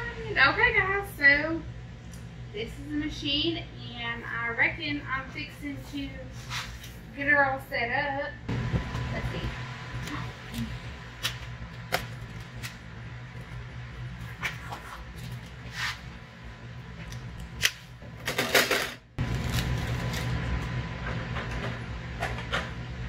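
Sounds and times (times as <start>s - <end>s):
rustling scrape: 6.3s - 7.0s, 14.2s - 16.1s.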